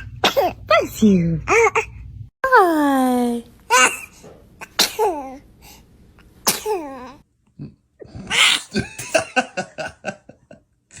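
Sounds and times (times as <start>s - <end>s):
baby sneezing: 0.2s - 0.6s, 3.7s - 5.4s, 6.4s - 7.2s, 8.3s - 8.7s.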